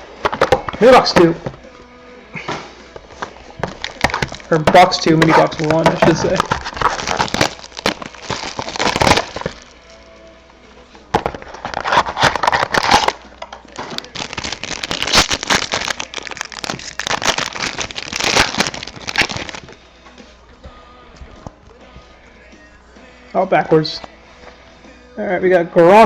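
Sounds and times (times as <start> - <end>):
wrapper and cardboard crinkling: 0.2 - 1.6, 2.9 - 10.0, 11.2 - 19.8.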